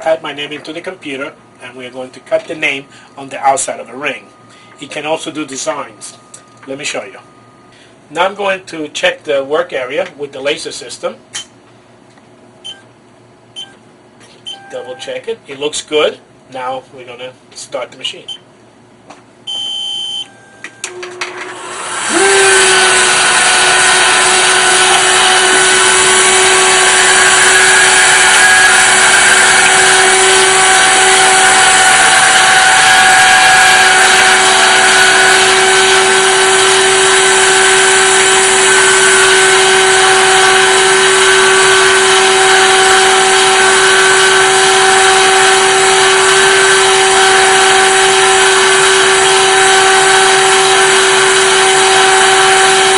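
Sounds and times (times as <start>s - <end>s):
spindle high whine: 0.0s - 11.6s, 19.4s - 52.9s
short beep: 12.6s - 12.9s, 14.4s - 15.2s, 19.5s - 20.9s.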